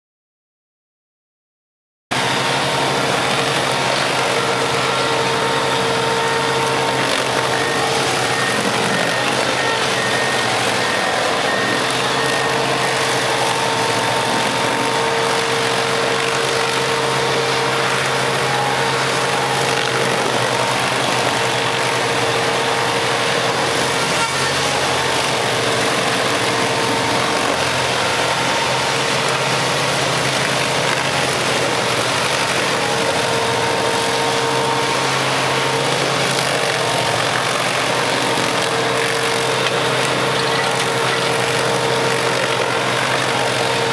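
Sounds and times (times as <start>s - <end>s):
stump grinder engine running: 2.1s - 43.9s.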